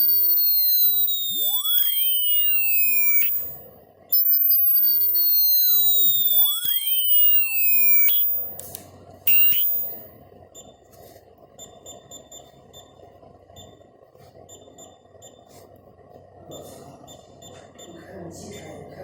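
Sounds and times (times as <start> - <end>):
high electronic beeps: 0.0 - 8.6, 9.3 - 10.1
low equipment hum: 0.0 - 19.0.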